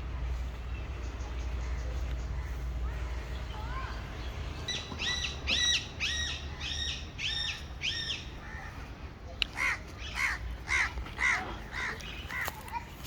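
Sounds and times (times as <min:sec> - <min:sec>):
crows cawing: 0:08.4 - 0:08.9, 0:09.5 - 0:12.8.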